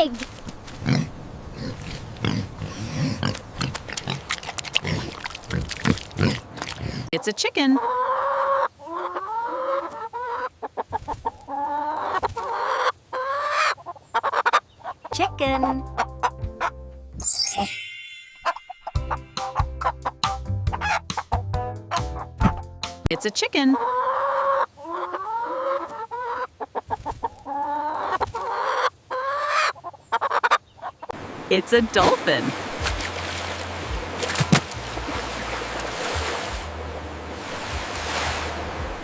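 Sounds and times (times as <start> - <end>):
chicken clucking: 7.8 - 15.2, 23.2 - 31.1.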